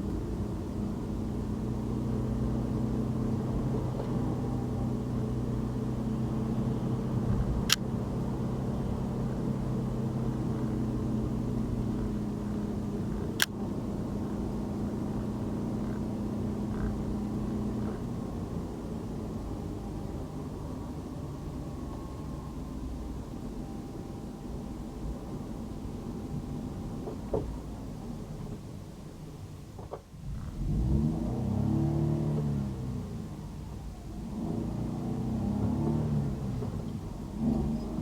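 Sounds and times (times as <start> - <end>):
car engine and tyre noise: 0.0 - 38.0
sharp clicks: 7.6 - 7.9, 13.0 - 13.6.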